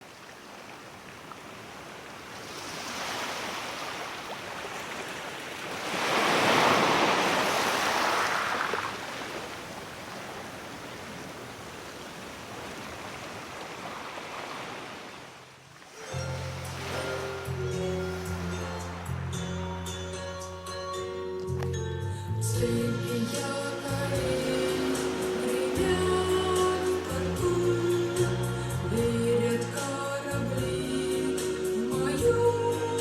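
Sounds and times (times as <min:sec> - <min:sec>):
sea surf washing in: 0:02.3 - 0:15.2, 0:16.0 - 0:19.6, 0:23.3 - 0:30.3
music: 0:15.9 - 0:33.0.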